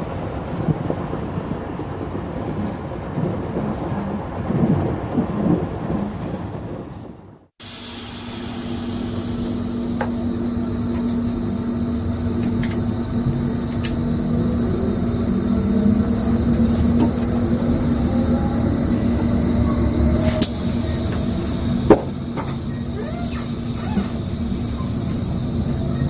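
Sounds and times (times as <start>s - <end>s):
train cab hum: 0.0s - 26.0s.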